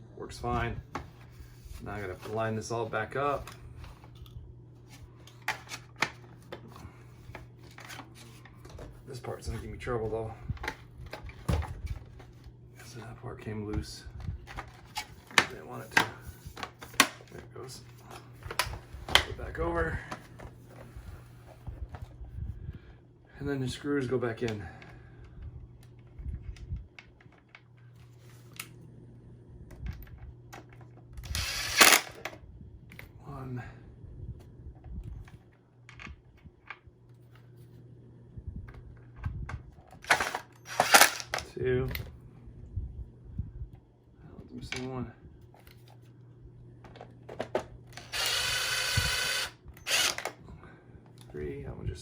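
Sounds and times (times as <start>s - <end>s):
power drill whining: 31.3s - 32.2s, 40.1s - 41.3s, 48.0s - 50.3s
plastic parts clicking and knocking: 46.8s - 48.3s.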